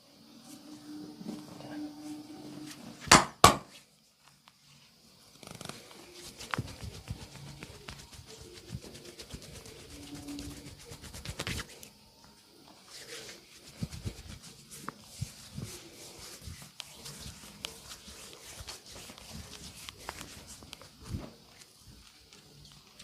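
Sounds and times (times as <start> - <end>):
hands patting and rubbing skin: 5.4 - 12.0, 12.8 - 23.0.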